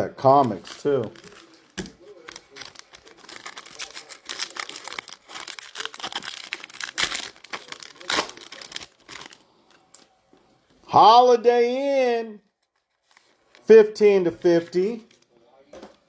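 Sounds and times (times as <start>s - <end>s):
card pack wrappers crinkling: 0.2s - 10.1s.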